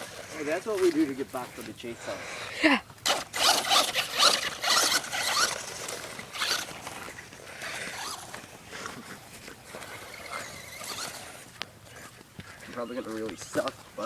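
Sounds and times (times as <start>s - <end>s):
electric motor whining: 3.0s - 8.4s, 9.6s - 11.5s.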